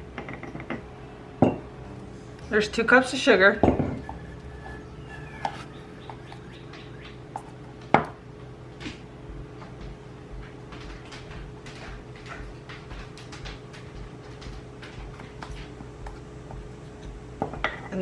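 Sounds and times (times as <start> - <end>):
steady hum: 0.0 - 18.0
kitchen utensils and dishes clinking: 2.4 - 7.6, 16.9 - 18.0.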